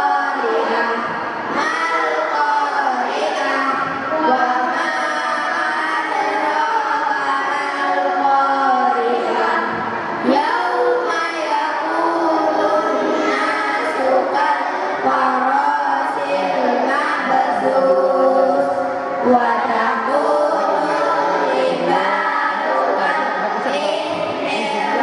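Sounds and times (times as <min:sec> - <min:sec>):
children singing in unison: 0:00.0 - 0:25.0.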